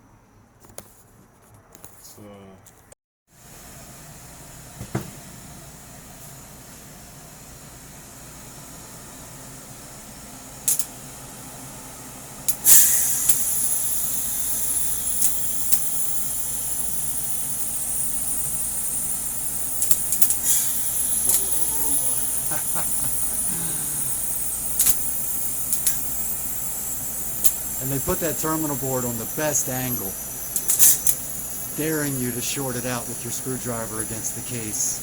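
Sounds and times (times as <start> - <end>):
knocks: 4.8 - 5.2
steady high-pitched hiss: 12.5 - 35.0.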